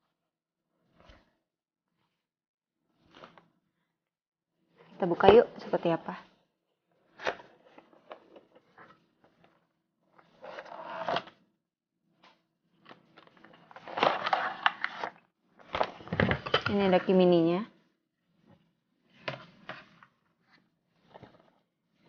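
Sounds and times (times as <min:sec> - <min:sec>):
packaging sliding and rustling: 0:13.2 - 0:16.5.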